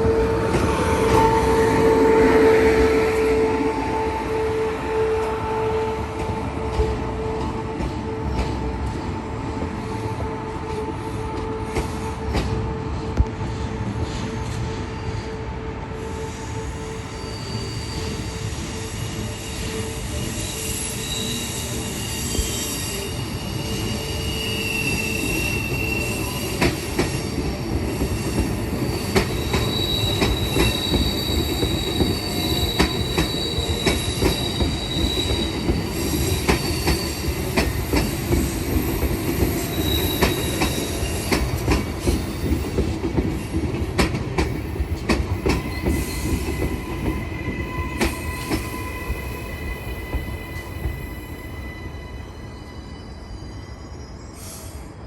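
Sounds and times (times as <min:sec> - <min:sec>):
train rumble: 0:00.0 - 0:53.3
train wheels squealing: 0:16.0 - 0:55.0.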